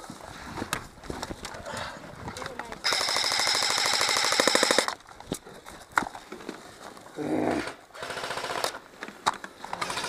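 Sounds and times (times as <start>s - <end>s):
airsoft gun burst: 2.8s - 4.9s, 8.0s - 8.8s.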